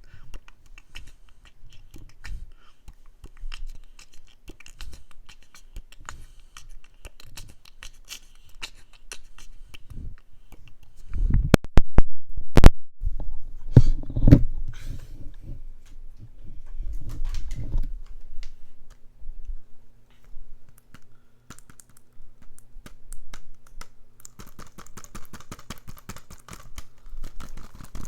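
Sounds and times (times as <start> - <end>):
soft rapid ticks and scratches: 0.1 - 11.3, 20.1 - 28.0.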